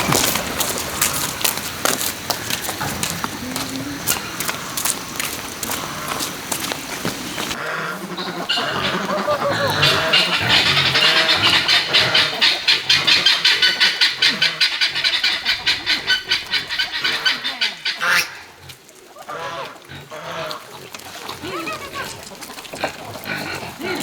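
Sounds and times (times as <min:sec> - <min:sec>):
ducks quacking: 0:00.0 - 0:24.0.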